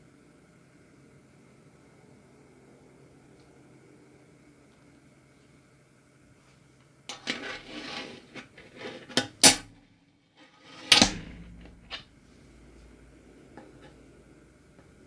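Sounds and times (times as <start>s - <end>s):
small parts clacking and rattling: 10.6s - 12.1s
hard knock: 10.9s - 13.9s.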